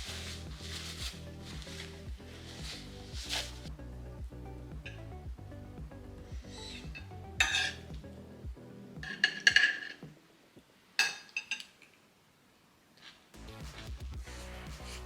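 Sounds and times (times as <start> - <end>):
background music: 0.0 - 10.5, 13.4 - 15.0
utensils clinking against dishes: 6.6 - 7.9, 9.0 - 10.0.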